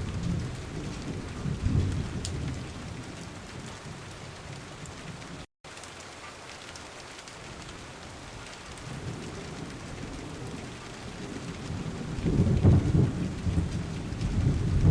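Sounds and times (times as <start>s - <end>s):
thunder rumbling: 0.0s - 4.8s, 8.7s - 14.9s
heavy rain falling: 0.0s - 14.9s.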